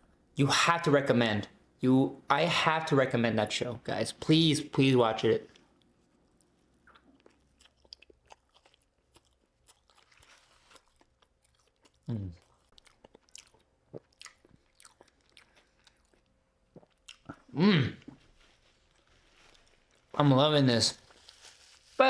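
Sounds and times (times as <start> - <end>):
chewing crunchy food: 5.4 - 20.2
person humming mm: 12.1 - 12.4, 17.5 - 18.2.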